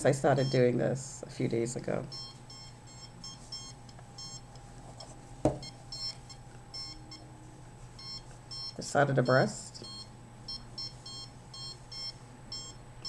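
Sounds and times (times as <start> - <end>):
steady low hum: 0.0 - 13.0
high-pitched electronic beeping: 2.1 - 4.5.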